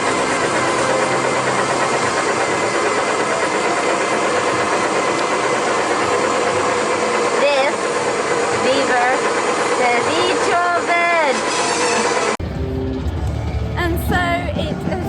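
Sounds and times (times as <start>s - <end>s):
small tractor engine running: 0.0s - 15.0s.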